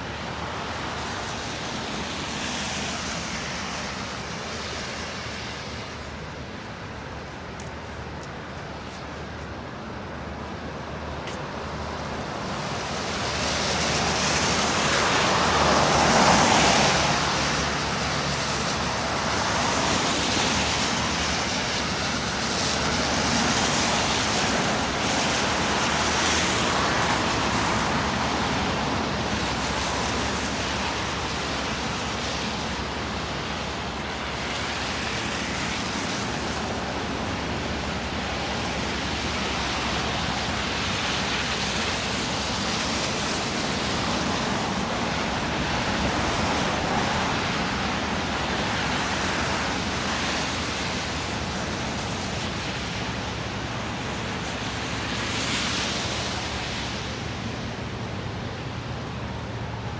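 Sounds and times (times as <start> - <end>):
traffic on snowy roads: 0.0 - 59.9.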